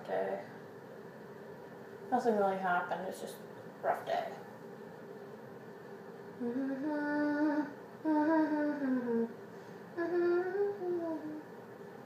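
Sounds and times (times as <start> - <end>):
person humming a tune: 6.4 - 9.4, 10.0 - 11.5.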